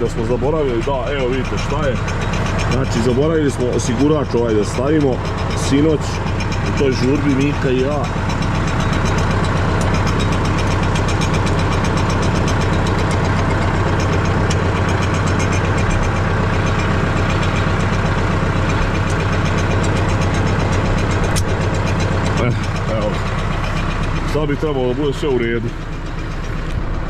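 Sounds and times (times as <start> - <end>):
tractor diesel engine idling: 0.0 - 27.0
sharp click: 21.2 - 21.6.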